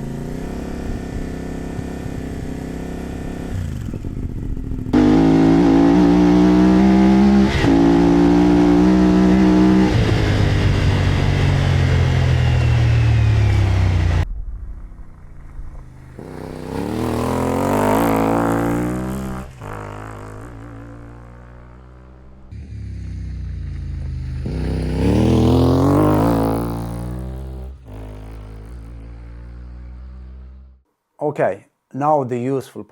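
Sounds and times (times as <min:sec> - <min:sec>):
motorcycle engine running: 0:00.0 - 0:07.5, 0:15.1 - 0:30.8
motorcycle passing by: 0:00.0 - 0:14.2, 0:16.0 - 0:30.8.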